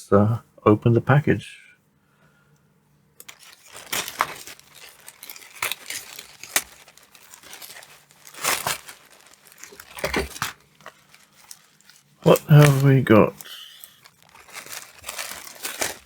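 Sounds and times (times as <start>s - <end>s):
package tearing: 3.2s - 16.0s
package wrapping crinkling: 3.2s - 16.0s.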